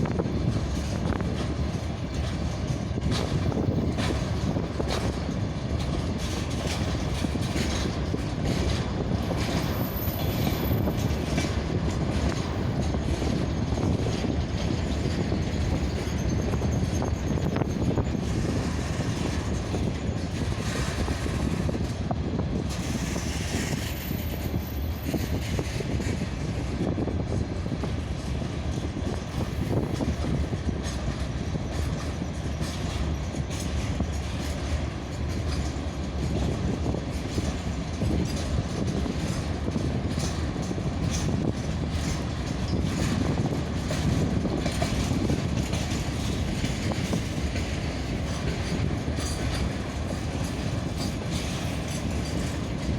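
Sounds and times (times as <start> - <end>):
freight train rolling on rails: 0.0 - 52.9.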